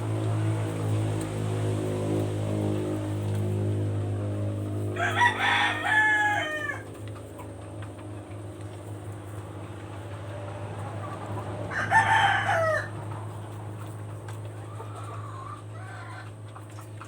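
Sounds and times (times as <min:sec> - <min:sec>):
steady low hum: 0:00.0 - 0:17.0
rooster crowing: 0:04.9 - 0:06.9, 0:11.6 - 0:13.0.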